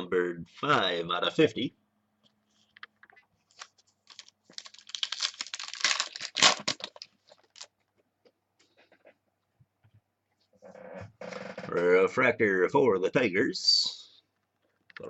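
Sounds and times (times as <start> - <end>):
plastic packaging crinkling: 3.0 - 7.9.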